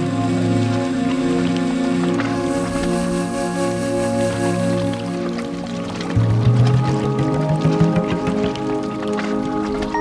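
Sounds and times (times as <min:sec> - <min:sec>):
music with prominent bass line: 0:06.2 - 0:08.6.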